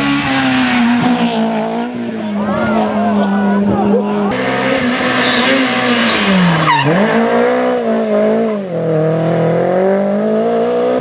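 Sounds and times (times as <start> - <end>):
rally car engine revving: 0.0 - 11.0
short squeal: 5.0 - 7.0.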